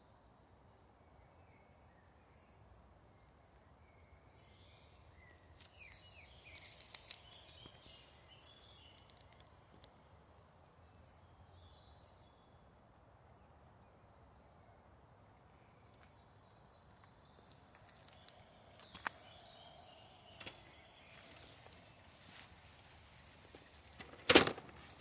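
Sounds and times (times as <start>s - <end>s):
songbird calls and trills: 0.9s - 10.1s, 13.8s - 24.0s.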